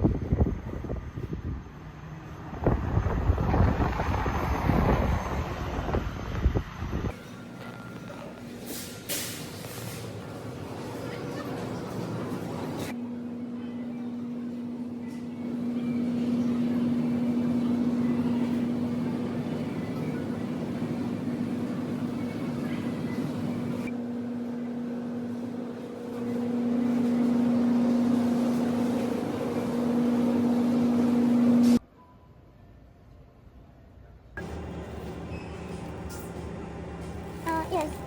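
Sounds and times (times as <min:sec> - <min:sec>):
vehicle running hum: 0:34.4 - 0:38.0.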